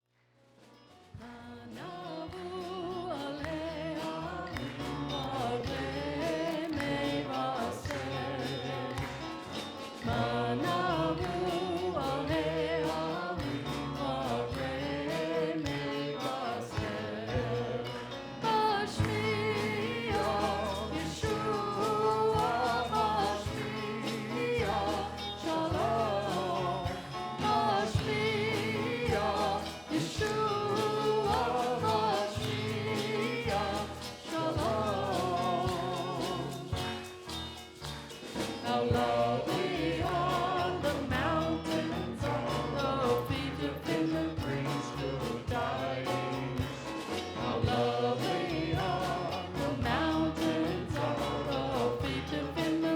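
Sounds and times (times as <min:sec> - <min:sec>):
instrumental backing with bass: 0:00.6 - 0:52.9
voices singing: 0:01.2 - 0:52.9.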